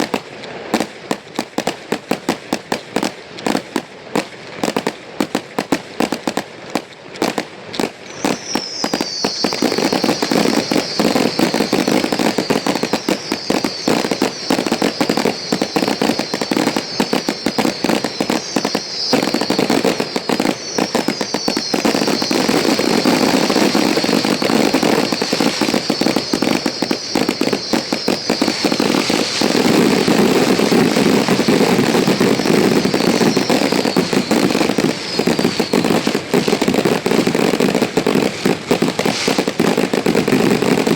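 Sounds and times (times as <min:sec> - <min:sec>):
fireworks bangs and crackling: 0:00.0 - 0:40.9
high falling whistles: 0:08.1 - 0:37.2.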